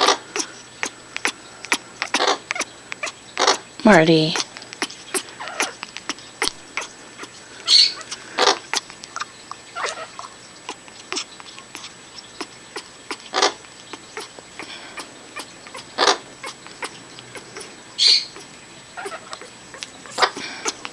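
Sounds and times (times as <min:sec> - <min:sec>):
parrot noisy bursts: 0:00.0 - 0:08.8, 0:12.4 - 0:13.6, 0:14.2 - 0:20.9
parrot clicking: 0:01.1 - 0:03.6.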